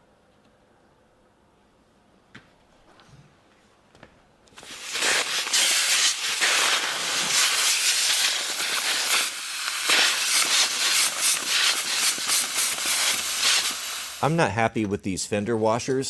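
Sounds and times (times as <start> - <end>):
loud crackling hiss: 4.6 - 14.5.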